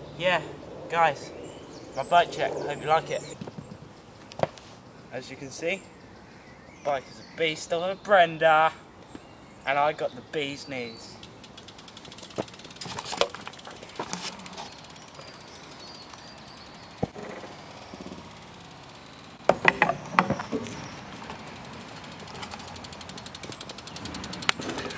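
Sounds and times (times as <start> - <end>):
bicycle hub freewheel ticking: 11.2 - 19.8, 21.2 - 24.9.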